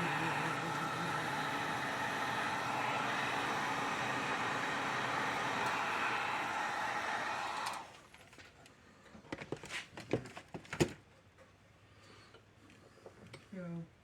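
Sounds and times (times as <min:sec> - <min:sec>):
heat gun blowing air: 0:00.0 - 0:07.9.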